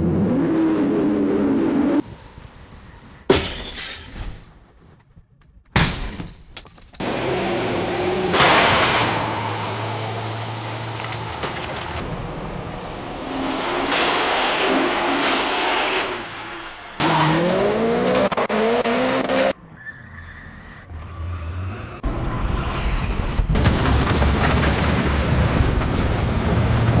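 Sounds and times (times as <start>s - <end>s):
tyres skidding: 6.3s - 27.0s
rough car and tyre noise: 6.6s - 27.0s.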